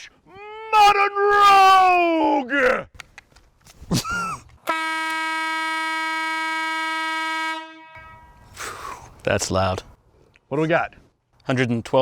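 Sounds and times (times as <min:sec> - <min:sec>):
air horn blast: 0:04.7 - 0:08.6.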